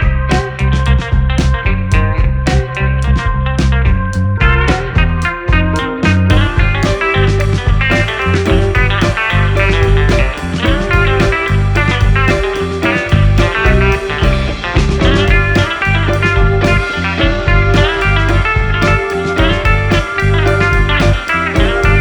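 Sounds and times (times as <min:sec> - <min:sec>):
guitar: 0:00.0 - 0:22.0
heavy bass line: 0:00.0 - 0:22.0
steady beat: 0:06.3 - 0:22.0.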